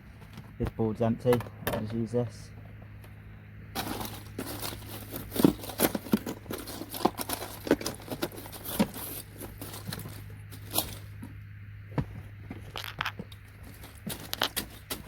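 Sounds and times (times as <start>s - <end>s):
electronic scrap clattering in a container: 3.8s - 11.1s.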